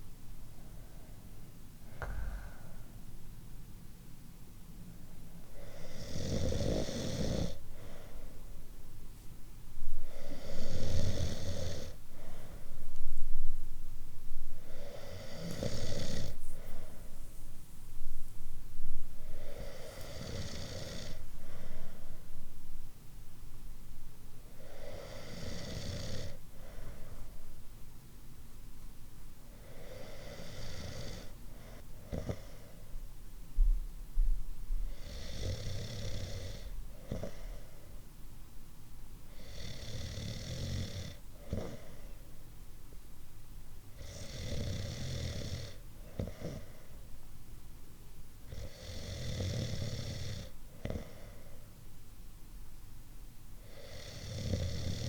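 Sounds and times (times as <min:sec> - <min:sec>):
quiet breathing: 0:00.0 - 0:23.7, 0:24.3 - 0:27.9, 0:29.3 - 0:38.2, 0:39.2 - 0:42.5, 0:43.9 - 0:47.3, 0:48.5 - 0:51.9, 0:53.5 - 0:55.0
person snoring: 0:01.9 - 0:02.9, 0:05.6 - 0:07.6, 0:10.1 - 0:12.0, 0:14.7 - 0:16.4, 0:19.4 - 0:21.2, 0:24.6 - 0:26.4, 0:29.6 - 0:31.3, 0:34.9 - 0:37.5, 0:53.7 - 0:55.0.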